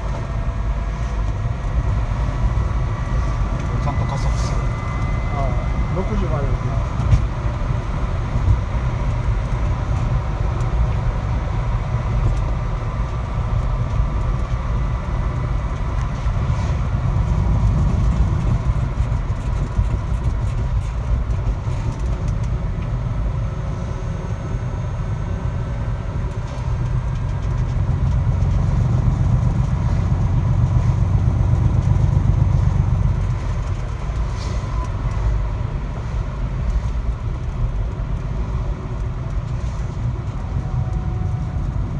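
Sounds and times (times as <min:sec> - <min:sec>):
faint drifting whine: 0:00.0 - 0:22.0
road and drivetrain rumble: 0:00.0 - 0:41.9.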